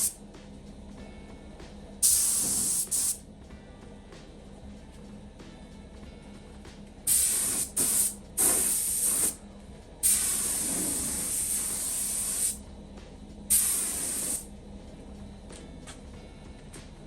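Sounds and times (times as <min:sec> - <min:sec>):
pressurised spray hissing: 0:02.0 - 0:03.2, 0:07.1 - 0:09.4, 0:10.0 - 0:12.6, 0:13.5 - 0:14.5.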